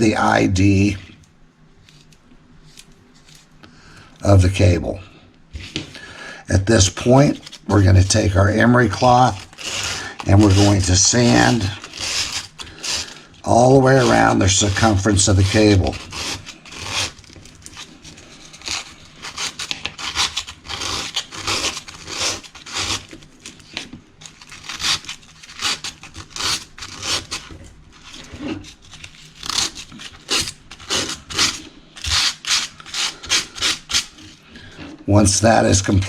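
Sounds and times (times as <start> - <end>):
emery cloth rubbing on cable: 6.7 - 23.0.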